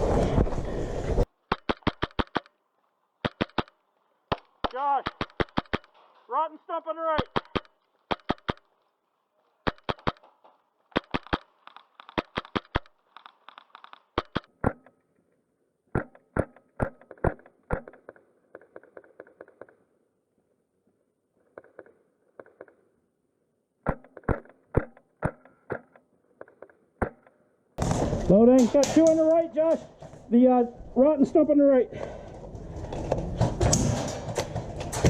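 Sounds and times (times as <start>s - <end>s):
airsoft rifle shots: 1.4s - 2.5s, 3.2s - 6.1s, 7.1s - 8.7s, 9.6s - 14.8s.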